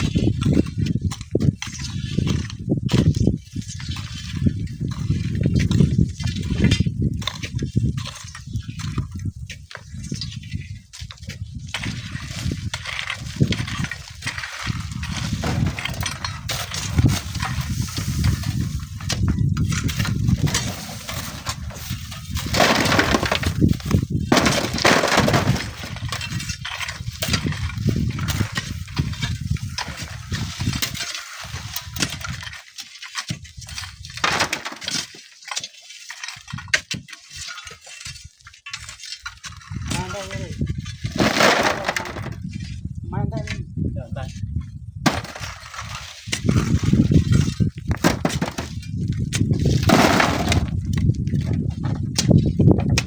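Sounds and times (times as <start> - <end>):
wind buffeting microphone: 0.0 - 32.5, 39.5 - 53.0
sand and stones clattering down: 11.1 - 42.5, 45.0 - 53.0.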